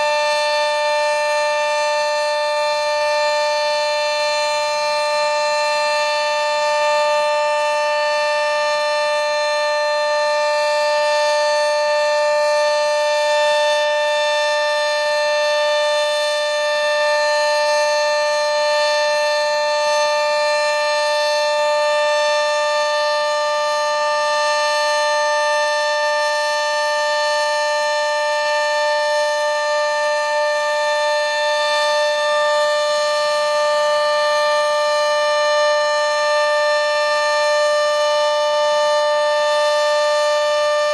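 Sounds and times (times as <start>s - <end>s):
dual-tone warning siren: 0.0s - 40.9s.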